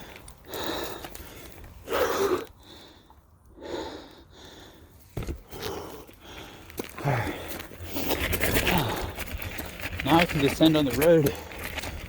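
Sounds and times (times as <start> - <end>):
person breathing heavily: 0.0 - 7.9, 8.6 - 9.7.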